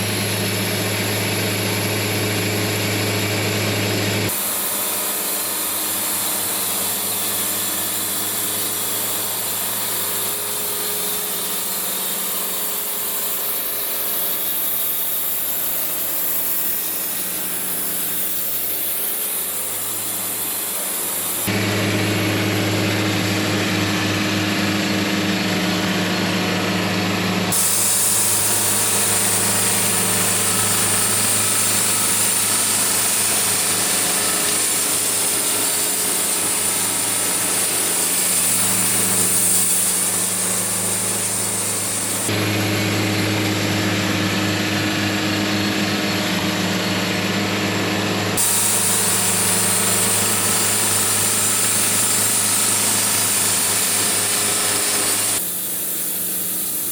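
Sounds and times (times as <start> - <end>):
sawmill engine droning: 0.0 - 56.9
blade sawing through log: 27.5 - 42.4, 48.4 - 55.9.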